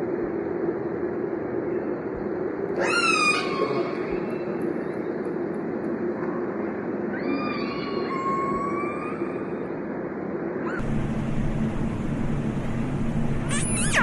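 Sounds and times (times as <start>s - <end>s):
steady low hum: 0.0s - 2.8s, 9.2s - 14.0s.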